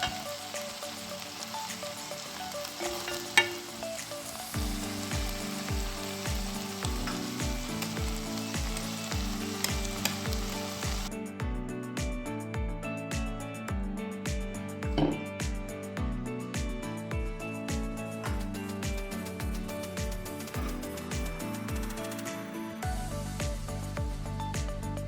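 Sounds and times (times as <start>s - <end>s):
meat sizzling in a pan: 0.0s - 11.1s
music with kick-drum beat: 0.0s - 25.0s.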